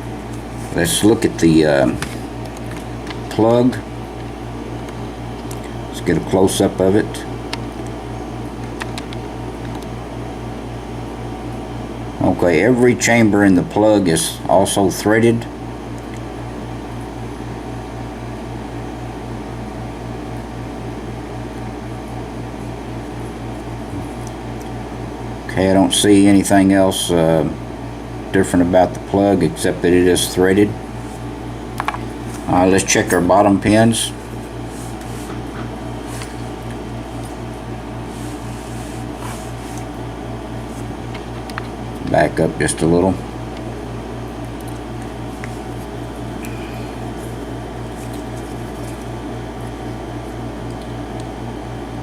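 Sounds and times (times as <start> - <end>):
pulsing machine hum: 29.7 - 52.0.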